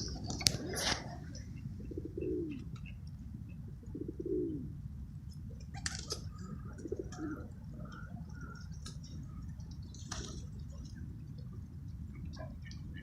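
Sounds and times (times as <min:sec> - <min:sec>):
pigeons cooing: 0:00.0 - 0:03.0, 0:03.7 - 0:04.8, 0:05.6 - 0:10.9.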